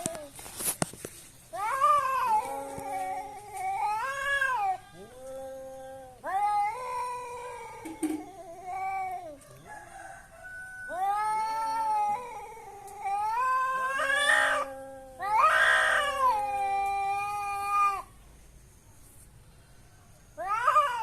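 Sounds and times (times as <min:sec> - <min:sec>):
cats yowling in a fight: 0:00.0 - 0:00.4, 0:01.5 - 0:09.5, 0:10.5 - 0:18.1, 0:20.4 - 0:21.0.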